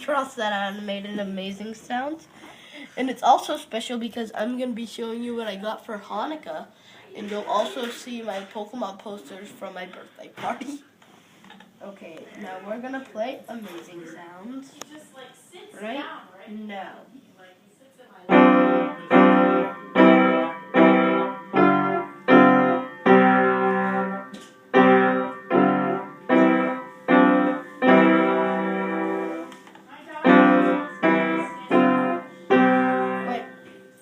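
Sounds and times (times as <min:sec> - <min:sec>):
piano chords: 0:18.3 - 0:34.0.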